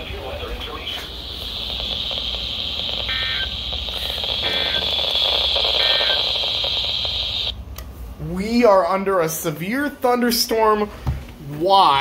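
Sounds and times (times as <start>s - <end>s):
warbling data bursts: 0.0s - 7.6s
alert buzzer shrill tone: 1.7s - 7.5s.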